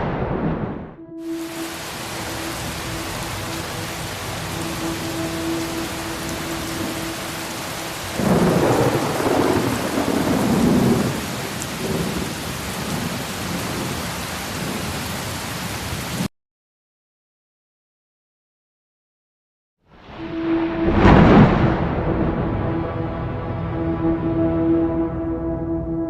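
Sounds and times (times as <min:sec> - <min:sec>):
thunder rumbling: 0:00.0 - 0:16.2, 0:20.0 - 0:24.2
heavy rain: 0:00.0 - 0:16.3, 0:20.0 - 0:25.4.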